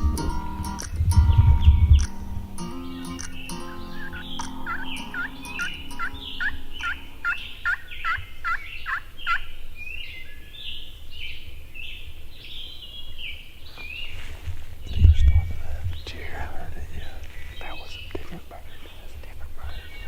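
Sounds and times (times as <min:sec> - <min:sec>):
high bird chirps: 0:00.0 - 0:14.1
wild turkey calling: 0:02.0 - 0:10.8.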